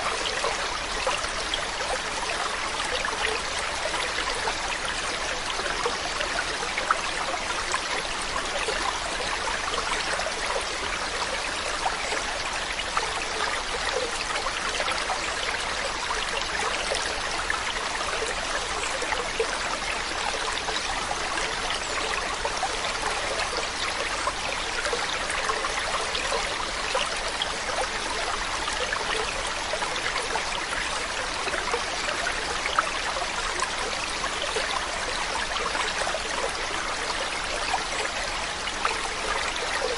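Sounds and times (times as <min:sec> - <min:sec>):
stream water over rocks: 0:00.0 - 0:39.9.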